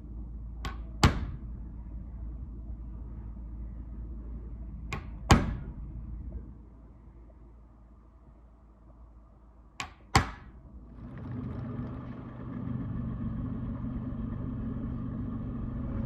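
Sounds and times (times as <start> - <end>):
motor-driven machine running: 10.7 - 16.0.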